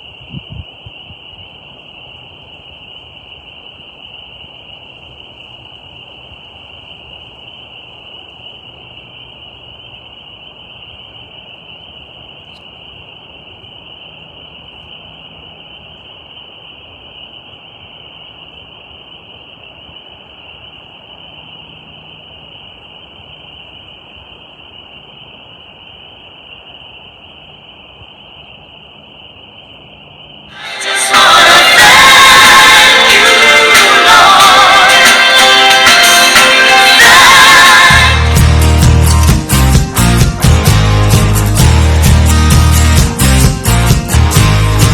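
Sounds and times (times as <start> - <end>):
high-pitched drone: 30.5 - 44.9.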